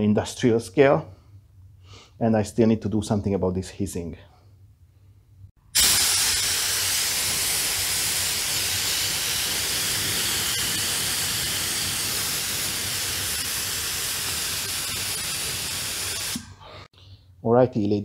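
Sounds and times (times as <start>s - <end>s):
compressed air hissing: 5.7s - 16.6s.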